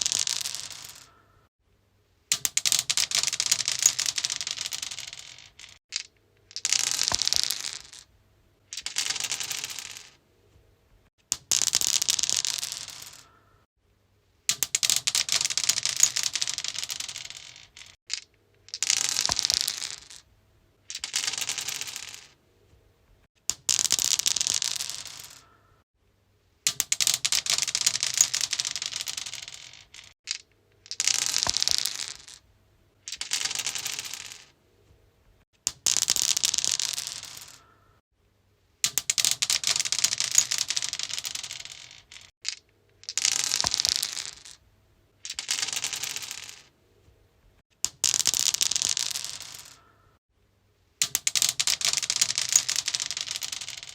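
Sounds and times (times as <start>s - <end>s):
dice clattering on stone: 0.0s - 1.3s, 2.3s - 8.1s, 8.7s - 10.2s, 11.3s - 13.3s, 14.5s - 20.3s, 20.9s - 22.4s, 23.5s - 25.5s, 26.7s - 32.4s, 33.0s - 34.6s, 35.6s - 37.8s, 38.8s - 44.6s, 45.2s - 46.7s, 47.8s - 50.0s, 51.0s - 53.9s.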